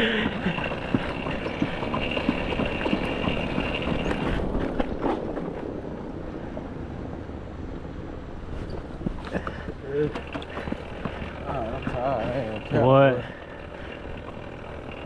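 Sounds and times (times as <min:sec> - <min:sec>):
quad tyres rolling on road: 0:00.0 - 0:15.0
footsteps: 0:08.5 - 0:12.7.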